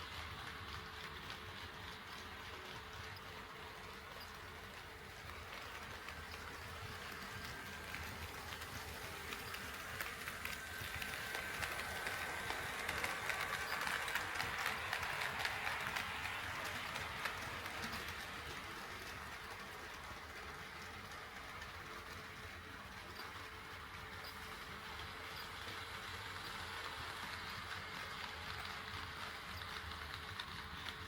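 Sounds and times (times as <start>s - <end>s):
model train motor hum: 0.0s - 31.0s
wheels clicking over track joints: 0.8s - 23.5s.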